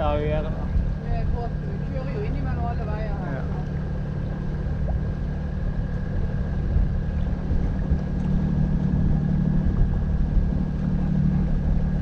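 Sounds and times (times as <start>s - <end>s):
boat diesel engine droning: 0.0s - 12.0s.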